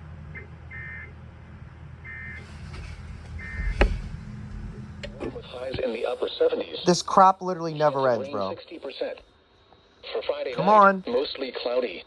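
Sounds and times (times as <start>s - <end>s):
steady low hum: 0.0s - 10.0s
sharp knock: 2.7s - 4.2s.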